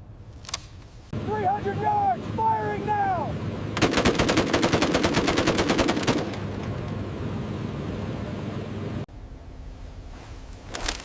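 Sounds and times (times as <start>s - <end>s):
steady rumble: 0.0s - 11.0s
machine-gun fire: 3.8s - 6.4s.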